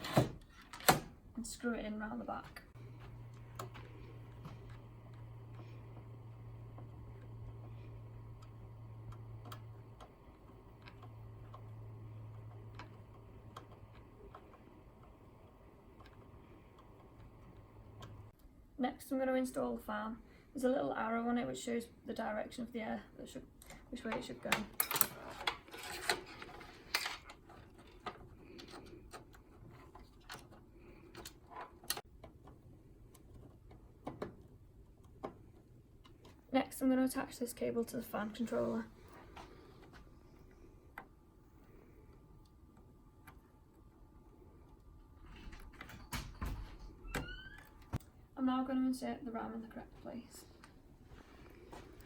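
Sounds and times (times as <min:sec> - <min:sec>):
computer fan clicking and tapping: 0:00.1 - 0:18.5, 0:23.6 - 0:38.6
steady low hum: 0:01.1 - 0:52.0.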